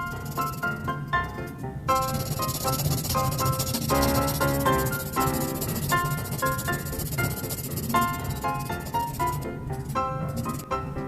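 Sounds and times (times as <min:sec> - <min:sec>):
shaker-like hiss: 0:00.0 - 0:10.7
light instrumental music: 0:00.0 - 0:11.0.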